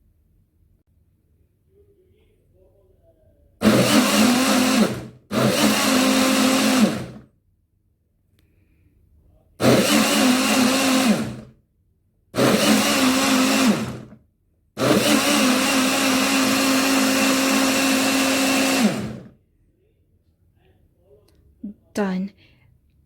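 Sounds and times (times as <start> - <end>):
blender motor humming: 3.6 - 7.2, 9.6 - 11.5, 12.4 - 14.2, 14.8 - 19.4.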